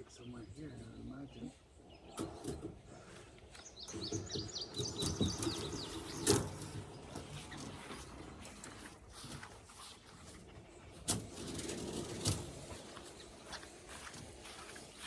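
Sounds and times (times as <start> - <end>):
songbird chirping: 0.0 - 15.0
rustling and handling noise: 4.7 - 15.0.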